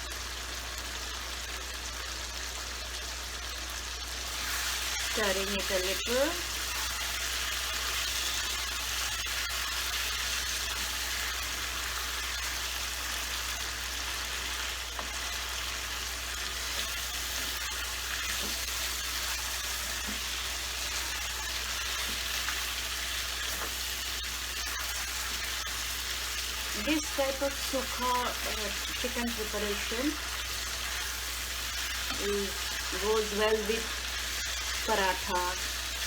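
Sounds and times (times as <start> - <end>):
food sizzling in oil: 0.0 - 36.0.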